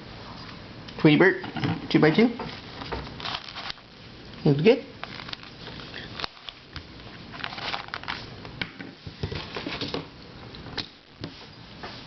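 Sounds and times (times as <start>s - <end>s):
packaging rustling: 2.5s - 4.0s, 5.0s - 8.3s.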